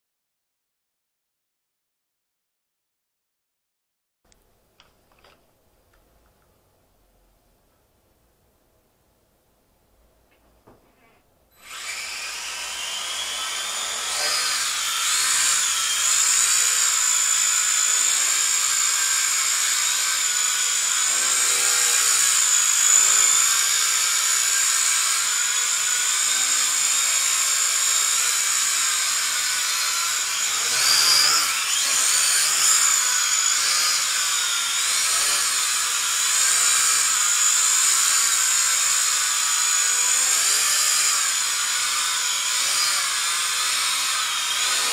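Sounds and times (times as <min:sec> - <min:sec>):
quadcopter motor whining: 0:11.6 - 0:44.9.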